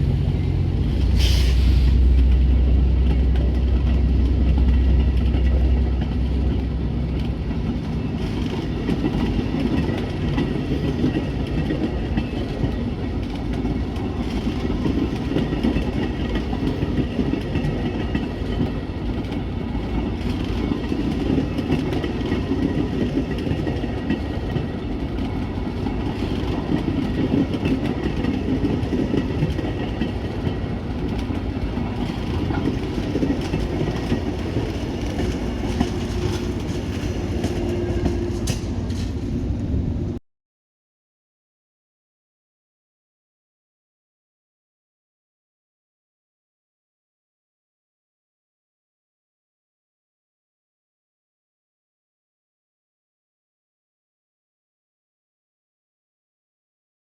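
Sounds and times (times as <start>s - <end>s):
diesel locomotive engine droning: 0.0s - 40.2s
train wheels rumbling on rails: 0.0s - 40.2s
brief hiss: 1.1s - 2.1s.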